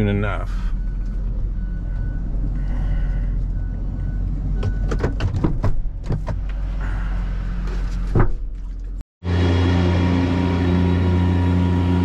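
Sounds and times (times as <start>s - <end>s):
vehicle engine running: 9.2s - 12.0s.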